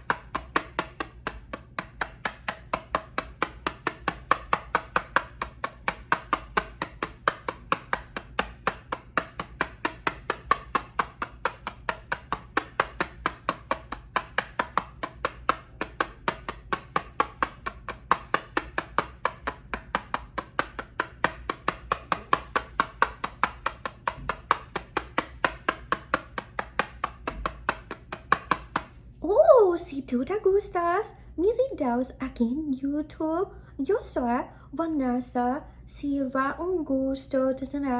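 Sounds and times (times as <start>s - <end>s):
tapping on eyeshadow palette: 0.0s - 29.0s.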